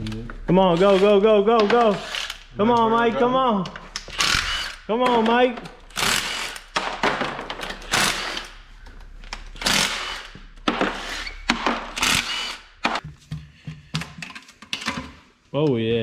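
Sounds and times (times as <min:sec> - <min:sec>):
handheld power tool bursts: 0:00.7 - 0:02.5, 0:04.0 - 0:04.9, 0:05.9 - 0:06.8, 0:07.6 - 0:08.6, 0:09.6 - 0:13.0.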